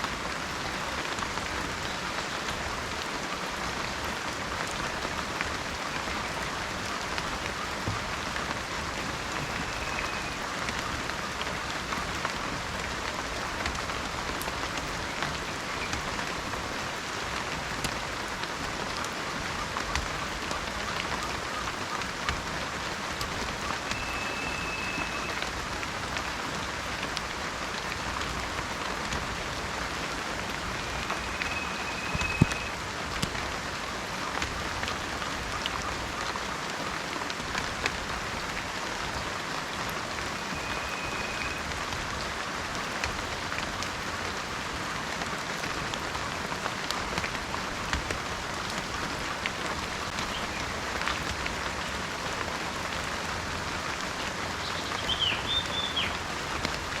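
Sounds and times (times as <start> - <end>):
rain with dripping drops: 0.0 - 57.0
faint high whistles: 24.0 - 25.4, 30.8 - 32.8, 40.5 - 41.6.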